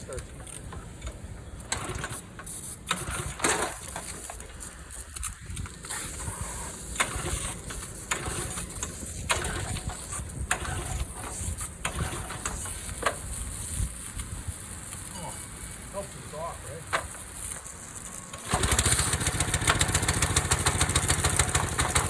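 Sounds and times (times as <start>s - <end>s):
small engine pull-started and running: 1.6s - 13.3s, 16.9s - 22.0s.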